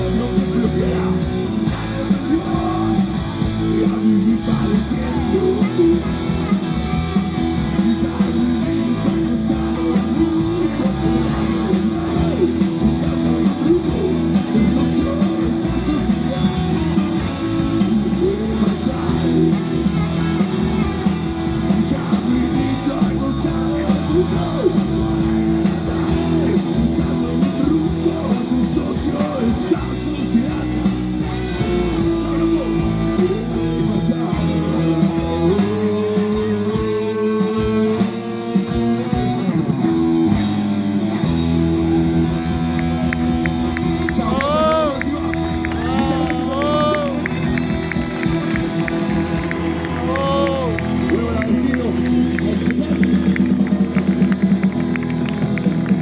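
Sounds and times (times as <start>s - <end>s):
electric guitar: 0.0s - 56.0s
rock band playing: 0.0s - 56.0s.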